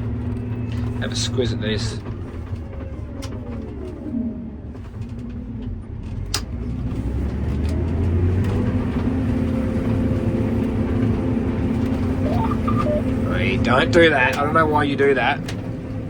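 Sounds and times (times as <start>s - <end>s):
combine harvester humming: 8.0s - 16.0s.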